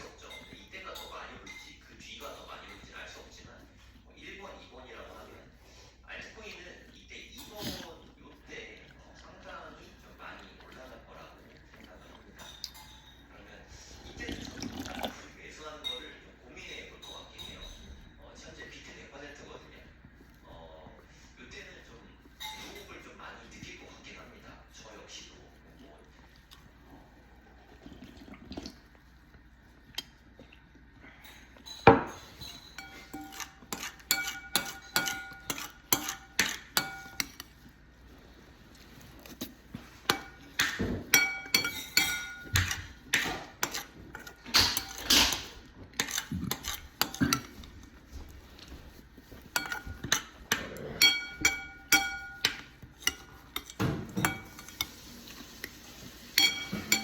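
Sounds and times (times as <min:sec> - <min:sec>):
spoon clinking against bowl: 0:31.2 - 0:37.6, 0:39.8 - 0:47.6, 0:49.3 - 0:57.0
bowl ringing: 0:51.0 - 0:52.7, 0:56.4 - 0:57.0.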